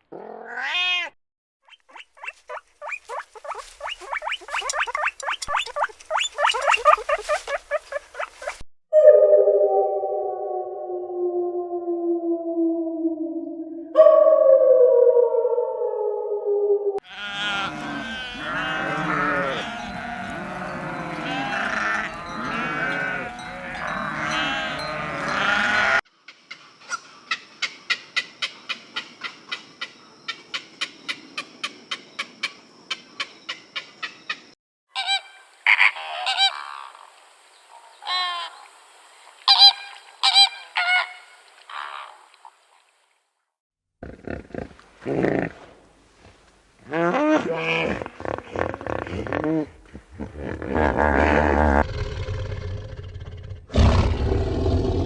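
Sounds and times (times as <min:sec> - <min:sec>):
geese honking: 0:02.5 - 0:08.6, 0:17.1 - 0:26.0
short clicking calls: 0:03.8 - 0:08.6.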